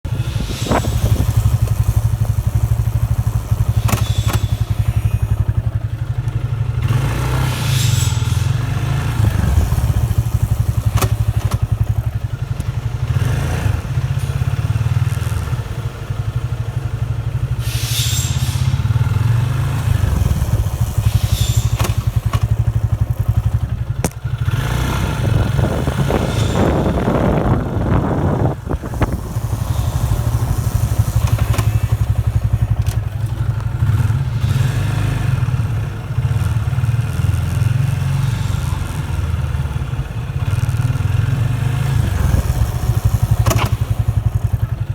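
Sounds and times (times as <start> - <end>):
motorcycle engine running: 0.0 - 44.9
disc brake grinding: 0.4 - 6.4, 20.0 - 23.4, 25.6 - 34.0.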